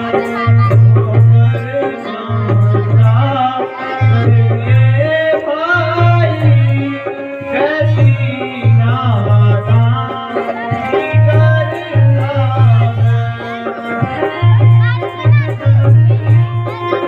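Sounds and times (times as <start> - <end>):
hand drums beating: 0.0 - 17.0.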